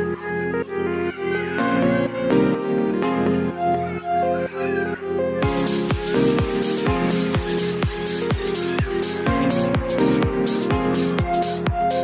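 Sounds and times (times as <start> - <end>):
bright hi-hats: 5.4 - 12.0.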